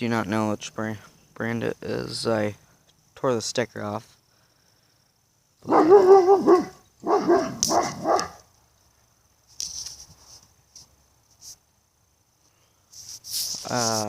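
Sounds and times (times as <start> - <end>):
dog barking: 5.6 - 8.4.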